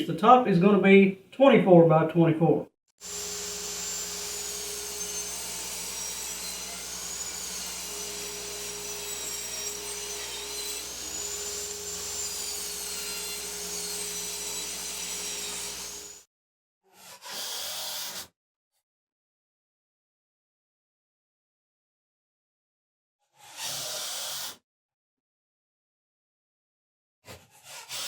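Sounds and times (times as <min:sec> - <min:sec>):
power saw cutting plywood: 0:03.0 - 0:16.2.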